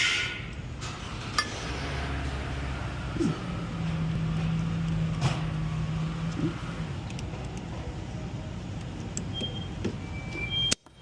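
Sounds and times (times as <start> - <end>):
low vehicle rumble: 0.4 - 10.6.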